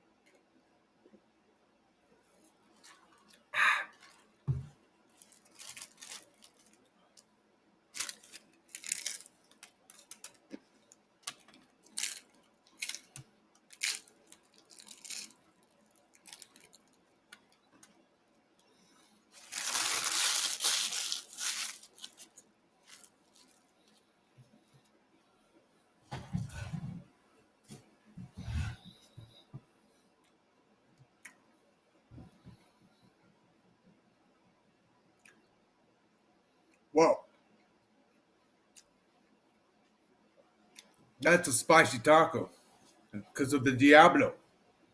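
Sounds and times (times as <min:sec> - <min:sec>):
rustling: 0:05.1 - 0:06.8, 0:08.0 - 0:13.2, 0:19.2 - 0:24.1.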